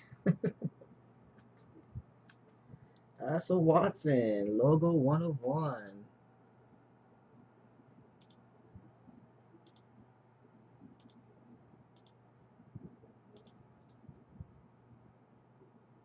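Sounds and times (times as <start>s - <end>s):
steady low hum: 0.0s - 16.0s
high-pitched double clicks: 9.6s - 9.9s, 11.0s - 11.2s, 12.0s - 12.2s.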